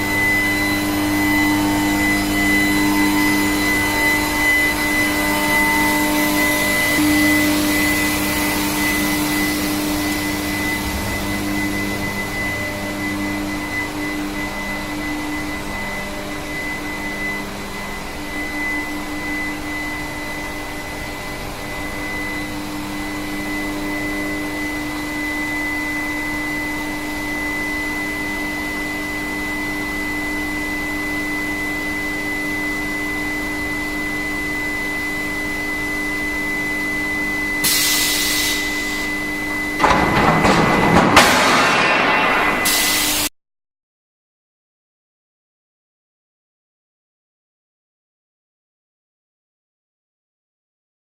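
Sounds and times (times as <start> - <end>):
machine noise: 0.0 - 22.0, 38.7 - 43.3
induction furnace high whine: 0.0 - 43.3
low hum: 39.8 - 43.0
loud rushing noise: 39.8 - 43.3.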